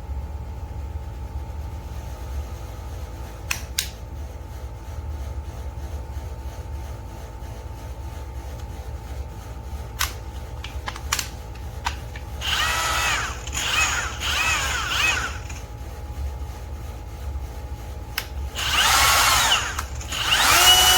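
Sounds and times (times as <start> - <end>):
cordless grinder motor whine: 12.4 - 15.6, 18.6 - 20.9.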